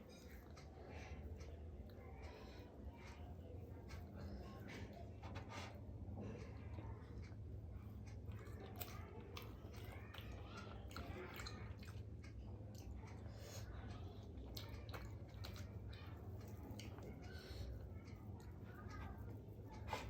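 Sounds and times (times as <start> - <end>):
close chewing mouth sounds: 0.0 - 20.0.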